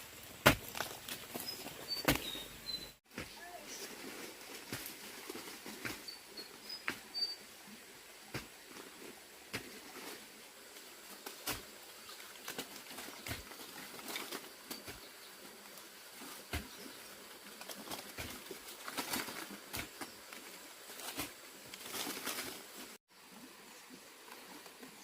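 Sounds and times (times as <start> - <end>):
rustling: 8.4 - 23.0.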